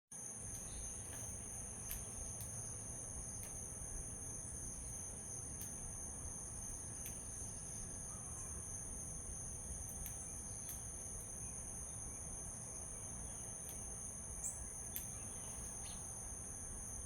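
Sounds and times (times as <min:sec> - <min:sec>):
high-pitched insect chorus: 0:00.2 - 0:17.0.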